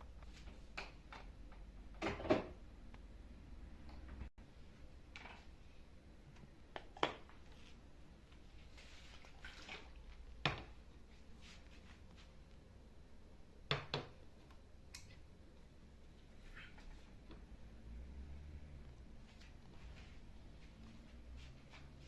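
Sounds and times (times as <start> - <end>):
kitchenware knocks and clicks: 2.0 - 2.6.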